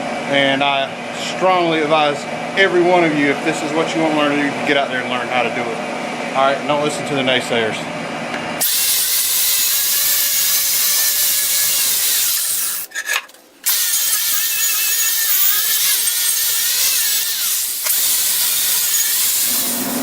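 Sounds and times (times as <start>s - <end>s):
power wire wheel scrubbing metal: 8.6s - 20.0s.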